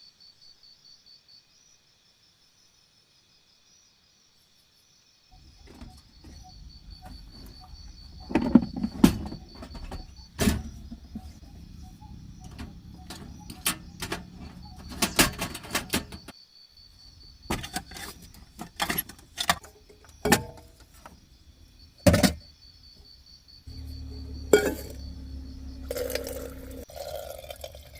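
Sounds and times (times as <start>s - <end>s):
high insect trill: 0.0s - 27.9s
objects knocking and clicking: 5.6s - 11.5s, 12.2s - 16.3s, 17.5s - 21.2s, 22.0s - 22.5s, 23.7s - 26.9s.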